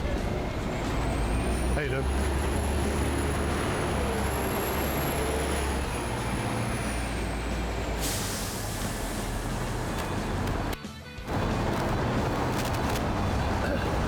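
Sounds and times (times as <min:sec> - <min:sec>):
bus engine rumble with whine: 0:00.0 - 0:14.0
compressed air hiss: 0:08.0 - 0:09.8.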